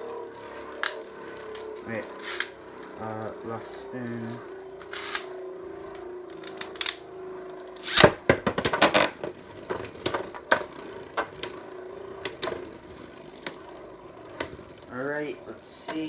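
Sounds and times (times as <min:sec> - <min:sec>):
steady hum: 0:00.0 - 0:16.0
spinning tops launch rush: 0:07.8 - 0:16.0.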